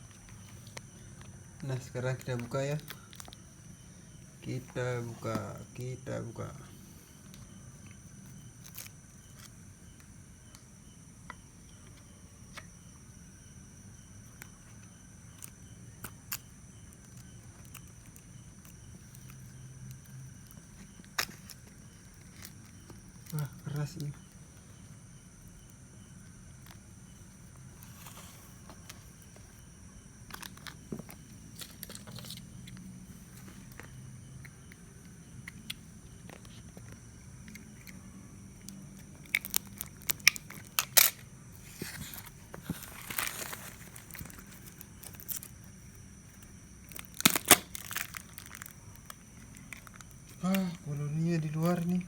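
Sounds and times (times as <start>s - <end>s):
plastic packaging crinkling: 39.2s - 45.7s, 46.8s - 52.0s
tape ripping: 39.3s - 45.5s, 46.9s - 48.7s.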